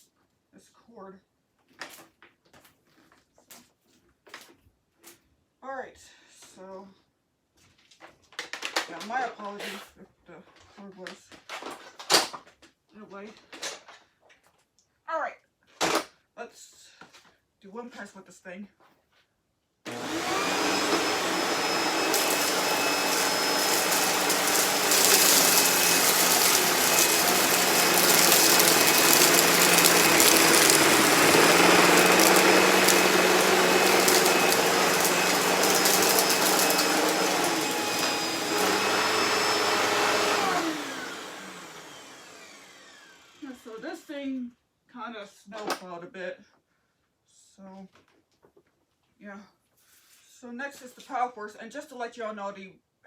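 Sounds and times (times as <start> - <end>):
vacuum cleaner running: 19.9 - 43.4
paper bits crackling: 22.1 - 37.6.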